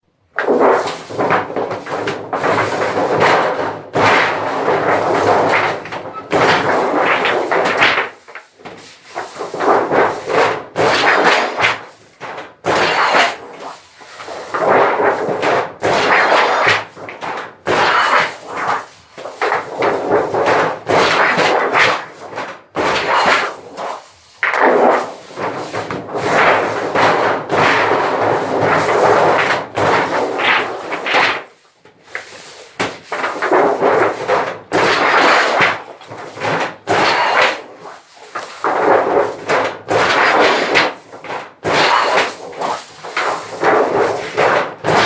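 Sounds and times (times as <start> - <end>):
sheet metal banging in machine: 1.2 - 8.1.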